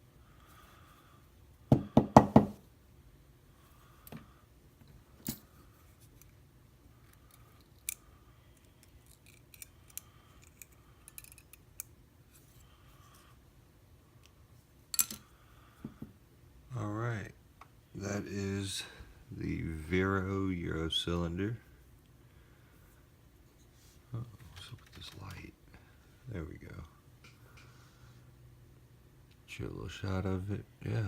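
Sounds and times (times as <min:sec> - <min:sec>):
sharp knocks of metal parts: 0:14.9 - 0:15.3.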